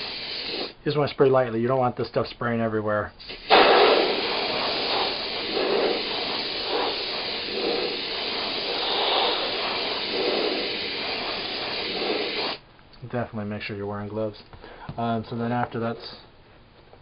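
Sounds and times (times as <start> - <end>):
aerosol can spraying: 0.0 - 0.8, 3.2 - 12.6.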